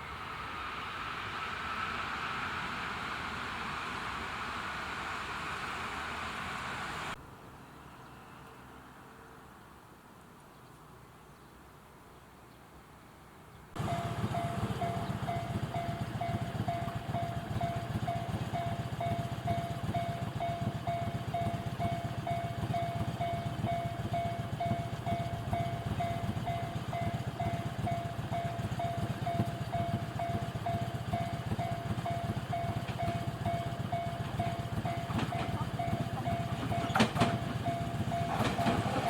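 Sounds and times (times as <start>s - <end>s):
level crossing warning bell: 13.8s - 39.0s.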